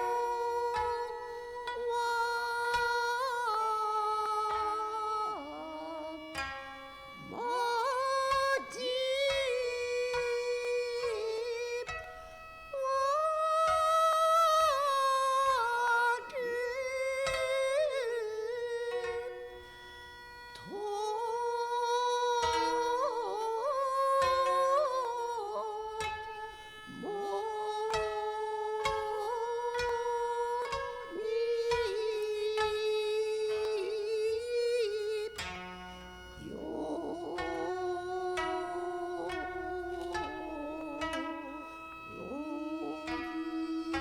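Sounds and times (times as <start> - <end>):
slow wavering wind melody: 0.0 - 44.0
steady sustained tones: 0.0 - 44.0
plucked string notes: 20.5 - 44.0.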